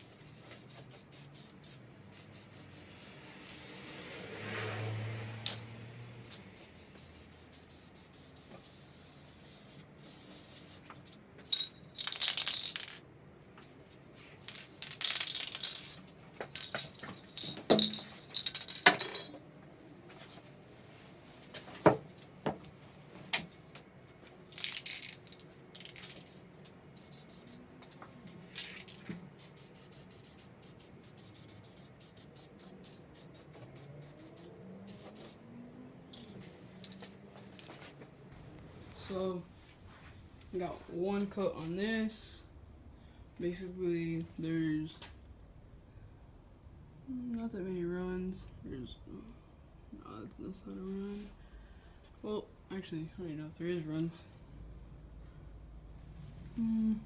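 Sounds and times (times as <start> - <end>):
spray paint can hissing: 0.0 - 5.6, 6.2 - 13.0, 14.4 - 18.8, 24.5 - 27.7, 28.5 - 35.4.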